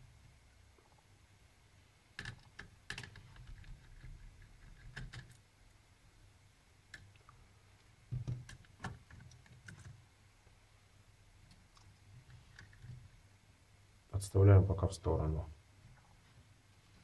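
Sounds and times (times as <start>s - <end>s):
small parts clicking and knocking: 2.2s - 5.4s.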